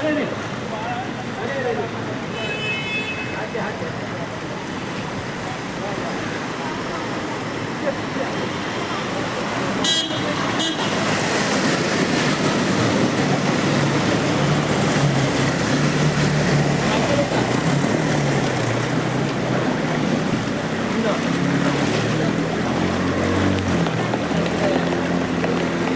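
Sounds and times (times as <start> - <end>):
rain and wet tyres hissing: 3.4 - 25.9
vehicle engines running: 3.4 - 25.9
car horn toots: 9.8 - 11.0.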